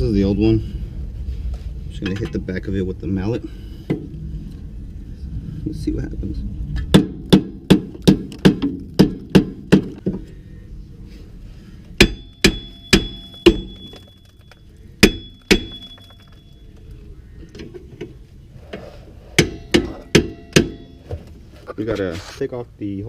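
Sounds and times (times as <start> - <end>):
mallet banging on metal hub: 6.9 - 10.0, 12.0 - 14.0, 15.0 - 16.4, 19.4 - 21.1.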